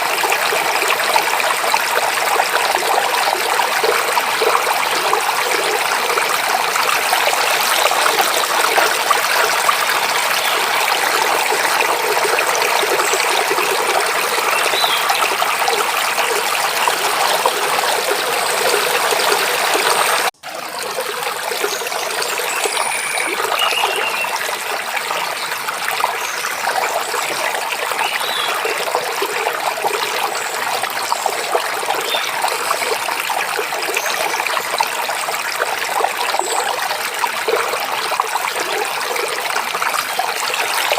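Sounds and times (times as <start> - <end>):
stream babbling over rocks: 0.0 - 40.9
faint bird chirps: 22.4 - 24.4.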